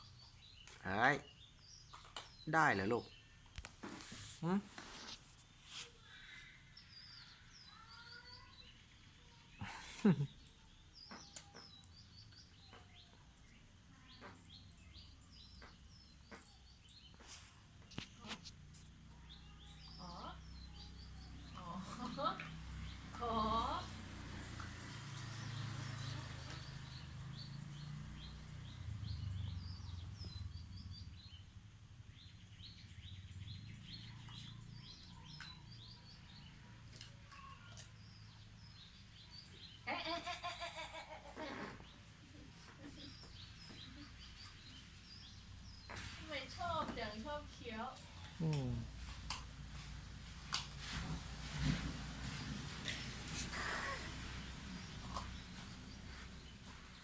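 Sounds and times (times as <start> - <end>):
small birds chirping: 0.0 - 57.0
faint bird chirps: 5.8 - 22.0.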